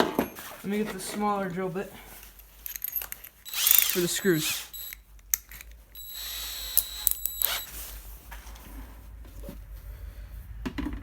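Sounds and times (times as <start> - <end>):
drill chuck clicks: 2.7 - 7.7
drill whine: 3.5 - 5.0, 6.0 - 7.7.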